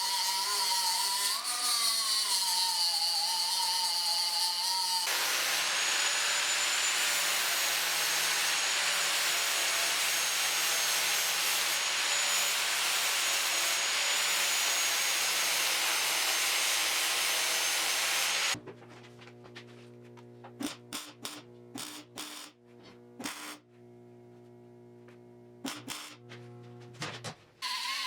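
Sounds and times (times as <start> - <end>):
power tool abrading sheet metal: 0.0 - 18.6, 20.6 - 22.6, 23.2 - 23.6, 25.6 - 26.3, 27.6 - 28.0.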